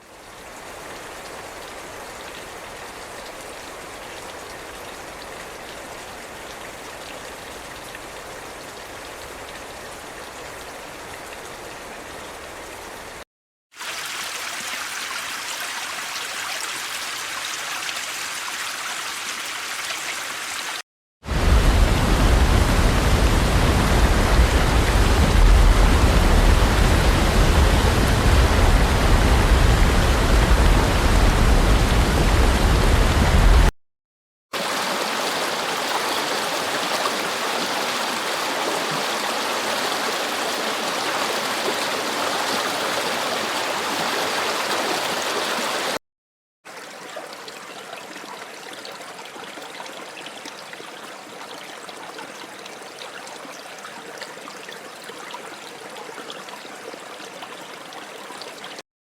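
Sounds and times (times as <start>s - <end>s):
creek flowing: 0.0s - 33.7s, 34.6s - 46.0s, 46.7s - 58.8s
thin stream of water: 0.0s - 33.7s, 34.5s - 46.0s, 46.6s - 58.8s
rushing water with deep rumble: 13.8s - 33.7s, 34.6s - 46.0s.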